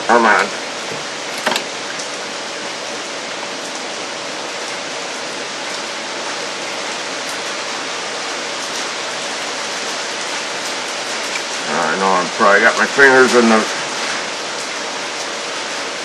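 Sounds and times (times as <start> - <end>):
steady hiss of water: 0.0 - 16.0.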